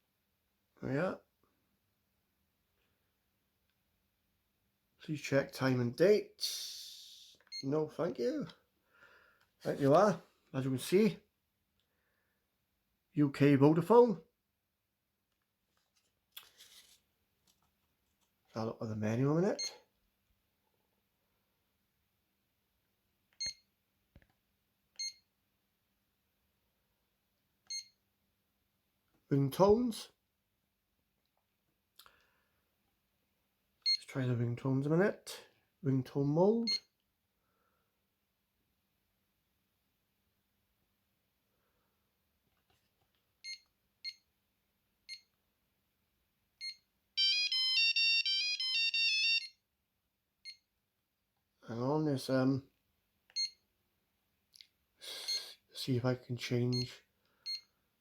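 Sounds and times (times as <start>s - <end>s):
phone keypad beeps: 46.6s - 49.6s, 57.5s - 57.7s
electronic ringtone melody: 47.2s - 49.5s.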